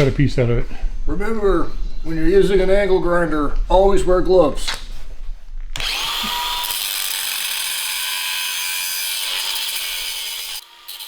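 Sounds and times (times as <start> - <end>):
angle grinder cutting steel: 5.8 - 11.0.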